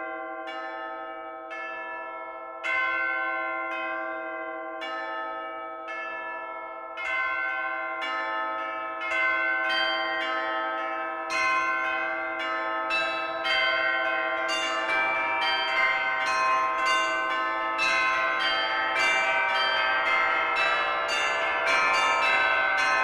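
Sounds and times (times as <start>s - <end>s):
bells ringing: 0.0s - 23.0s.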